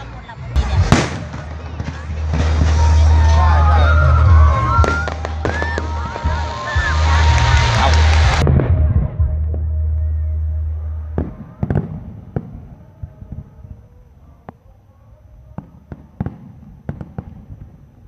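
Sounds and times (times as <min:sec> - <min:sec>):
low rumble: 0:00.0 - 0:14.4
fireworks bangs and pops: 0:00.6 - 0:03.7, 0:04.5 - 0:09.6, 0:11.2 - 0:13.5, 0:15.6 - 0:18.0.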